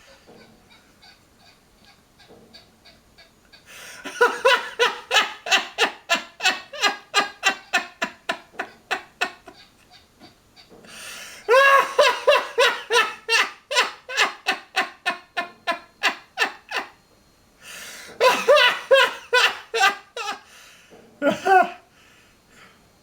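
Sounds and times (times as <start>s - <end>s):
man laughing hard: 4.0s - 10.3s, 11.4s - 16.9s, 18.2s - 20.5s, 21.2s - 21.8s
breath in: 10.9s - 11.5s, 17.6s - 18.2s.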